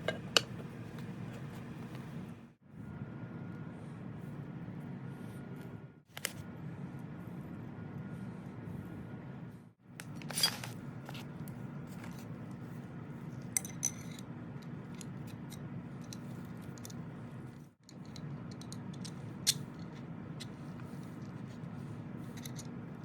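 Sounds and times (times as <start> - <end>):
steady low hum: 0.0 - 23.0
small metal parts clinking: 13.5 - 14.2.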